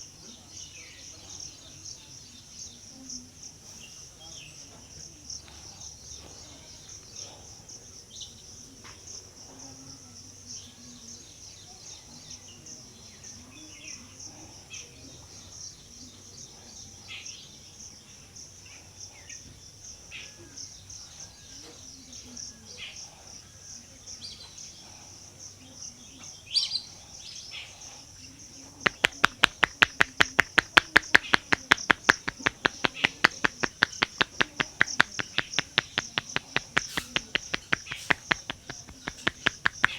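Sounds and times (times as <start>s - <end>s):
high insect drone: 15.5s - 39.9s
bird chirps: 26.5s - 39.9s
hands slapping a head: 28.8s - 39.9s.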